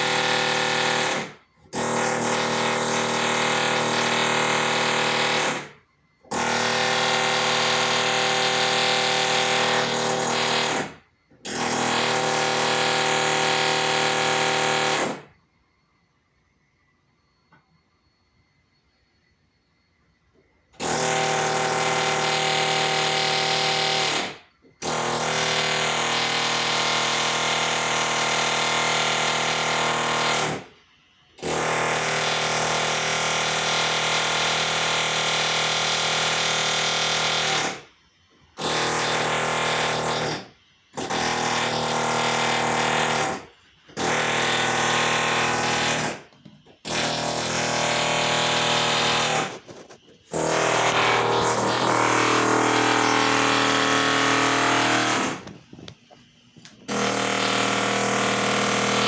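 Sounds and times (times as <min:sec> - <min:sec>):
harsh machine noise with hum: 0:46.2 - 0:59.0.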